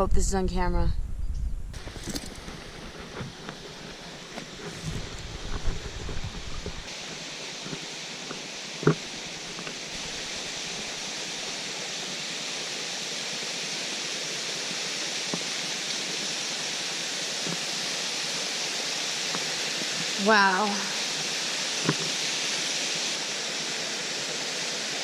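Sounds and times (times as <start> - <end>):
wind rumble on microphone: 0.0 - 6.9
waterfall rushing: 1.8 - 25.0.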